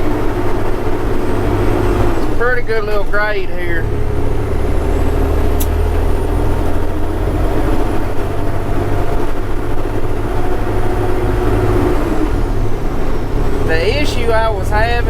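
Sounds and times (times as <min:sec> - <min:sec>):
diesel truck engine rumbling: 0:00.0 - 0:15.0
engine cooling fan: 0:00.0 - 0:15.0.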